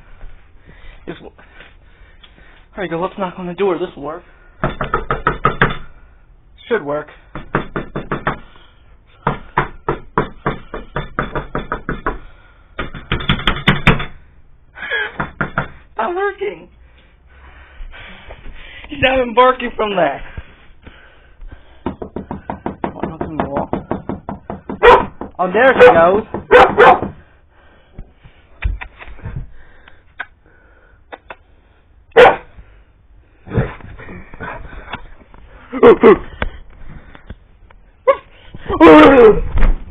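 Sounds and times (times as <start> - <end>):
rapid knocking on a door: 4.6 - 5.8, 7.3 - 8.4, 9.2 - 12.2, 12.8 - 14.2, 21.8 - 27.2
dog barking: 24.8 - 25.2, 26.5 - 27.1, 32.1 - 32.5.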